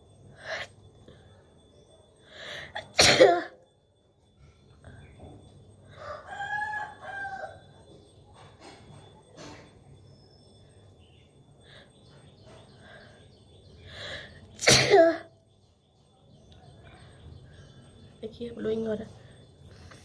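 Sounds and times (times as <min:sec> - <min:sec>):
rooster crowing: 0:05.9 - 0:07.9
breathy intake of breath: 0:12.8 - 0:14.5.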